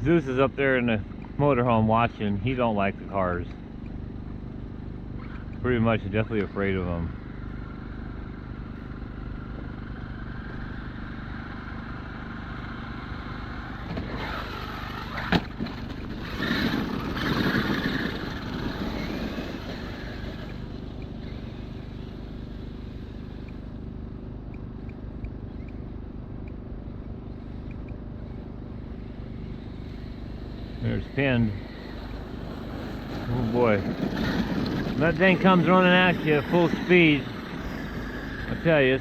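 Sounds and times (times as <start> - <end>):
steady hum: 0.0 - 39.0
electric motor whining: 5.2 - 23.9, 26.9 - 39.0
tyres spinning and scrabbling on ice: 14.1 - 20.6, 30.7 - 39.0.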